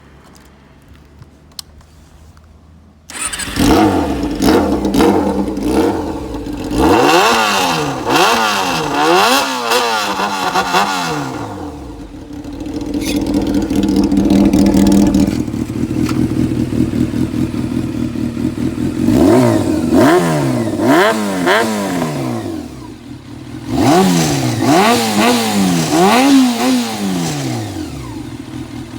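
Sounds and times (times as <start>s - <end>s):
motorcycle engine revving and idling: 3.1s - 28.9s.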